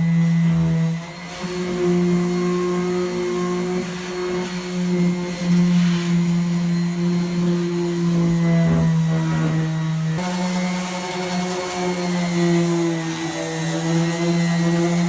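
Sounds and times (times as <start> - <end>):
small electric motor humming: 6.2 - 15.0.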